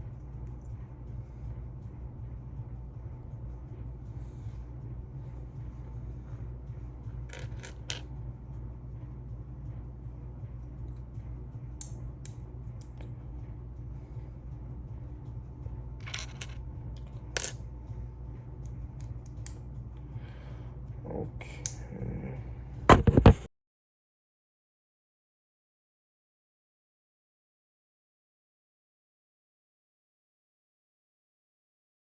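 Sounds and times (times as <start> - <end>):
steady low hum: 0.0 - 23.5.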